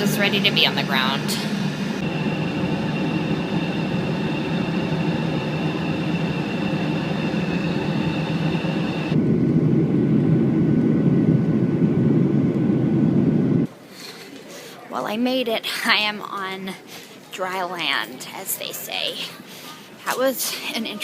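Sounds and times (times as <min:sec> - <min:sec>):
airliner cabin rumble: 0:00.0 - 0:13.7
faint high whine: 0:00.0 - 0:13.7.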